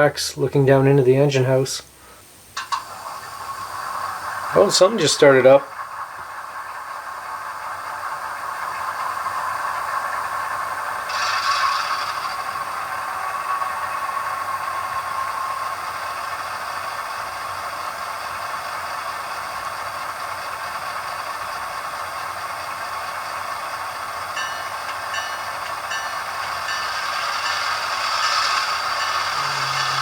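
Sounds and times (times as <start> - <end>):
model diesel engine sound: 15.4 - 30.0
short high tones: 29.3 - 30.0.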